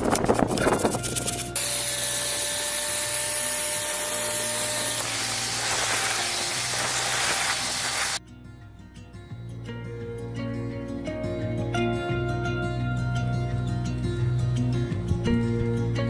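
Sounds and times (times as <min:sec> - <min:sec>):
spray hissing: 0:01.6 - 0:08.2.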